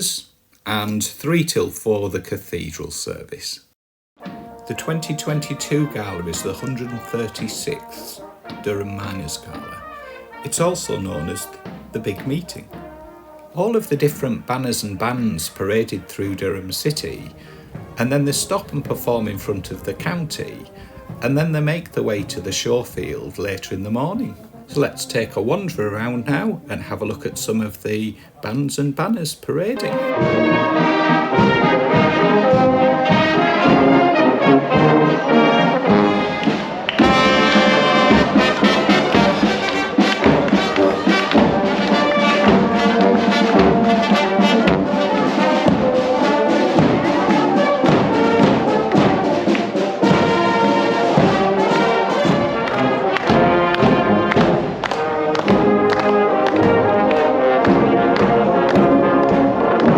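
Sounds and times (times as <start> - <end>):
brass band playing: 4.2 - 27.7, 29.6 - 59.9.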